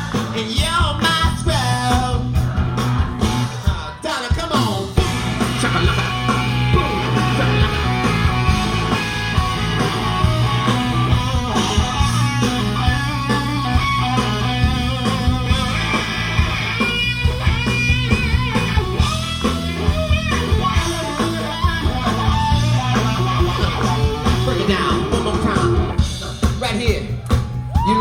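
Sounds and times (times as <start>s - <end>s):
bass guitar: 0.0s - 28.0s
drums: 0.0s - 28.0s
electric guitar solo: 5.0s - 26.0s.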